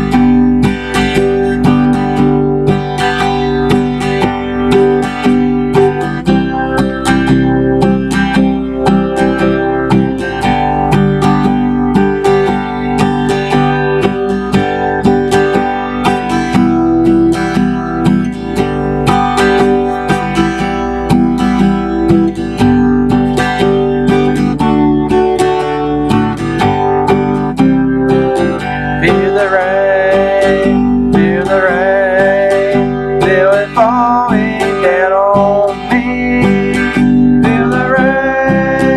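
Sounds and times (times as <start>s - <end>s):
acoustic guitar strumming: 0.0s - 38.9s
person singing: 26.3s - 38.9s.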